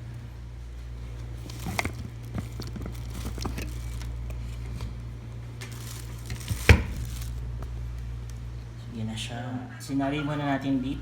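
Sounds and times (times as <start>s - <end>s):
steady low hum: 0.0s - 11.0s
kitchen clicks and rustles: 1.2s - 4.9s, 5.6s - 7.4s.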